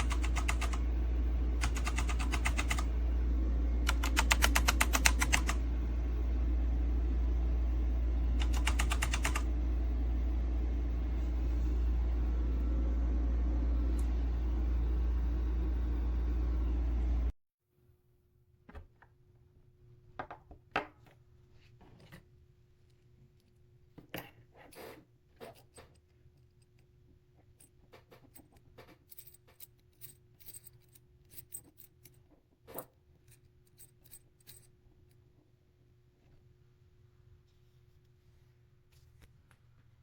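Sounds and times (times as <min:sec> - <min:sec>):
faint steady hum: 0:00.0 - 0:20.1.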